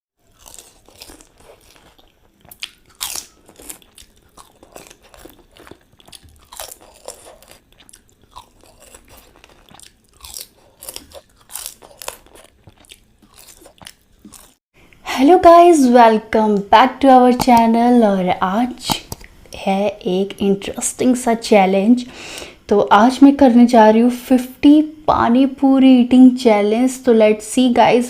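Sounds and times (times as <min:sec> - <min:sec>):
person chewing: 0:00.2 - 0:15.0, 0:18.8 - 0:19.4
crisp shells crunching: 0:00.3 - 0:14.6.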